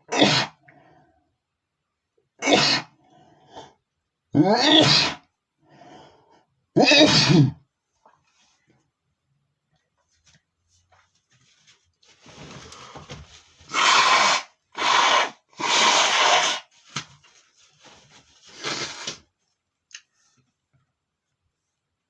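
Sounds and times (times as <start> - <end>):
man sneezing: 0.0 - 0.6, 2.4 - 2.9, 4.4 - 5.2, 6.8 - 7.6.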